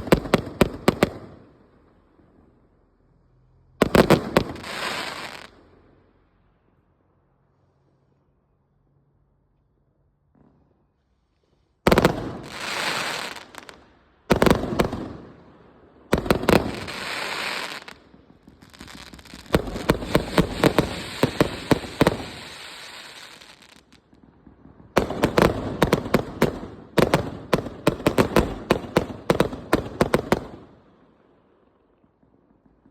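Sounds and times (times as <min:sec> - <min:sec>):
fireworks hissing and crackling: 0:00.0 - 0:01.4, 0:03.8 - 0:05.8, 0:10.4 - 0:15.4, 0:16.1 - 0:30.7
loud firework bangs: 0:03.8 - 0:05.6, 0:11.9 - 0:30.8.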